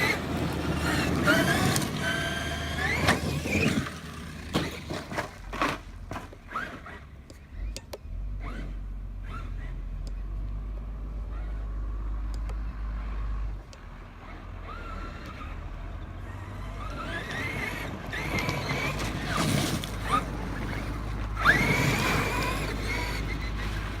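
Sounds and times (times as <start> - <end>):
electric motor whining: 0.0 - 4.9, 6.5 - 24.0
tyres rushing: 13.1 - 24.0.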